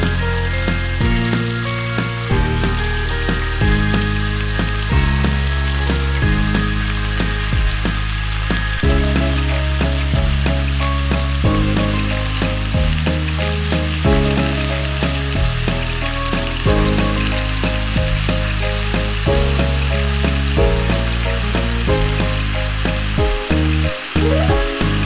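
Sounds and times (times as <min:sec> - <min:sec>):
background music with bass: 0:00.0 - 0:25.0
food sizzling in a pan: 0:07.0 - 0:25.0.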